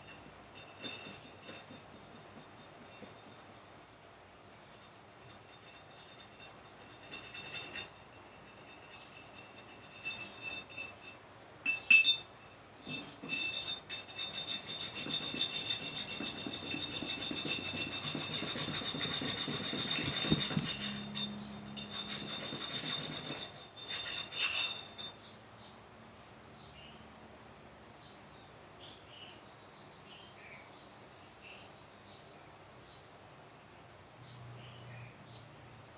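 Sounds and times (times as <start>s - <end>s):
scrubbing rust off metal: 0.0s - 3.5s, 4.6s - 11.2s, 12.1s - 25.3s.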